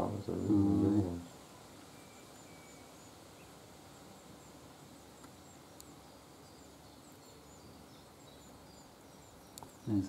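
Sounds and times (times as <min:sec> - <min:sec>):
faint steady hiss: 0:00.0 - 0:10.0
small birds chirping: 0:00.0 - 0:10.0
faint tick: 0:09.5 - 0:09.8.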